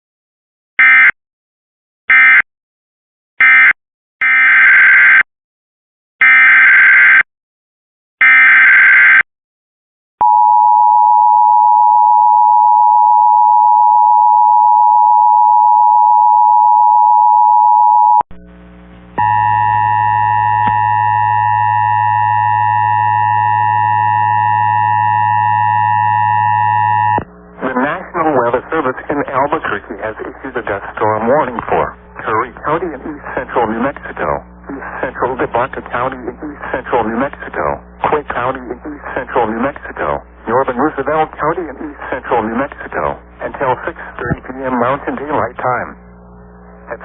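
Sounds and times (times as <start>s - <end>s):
steady attention tone: 10.2s - 47.0s
drone of held tones: 19.2s - 27.7s.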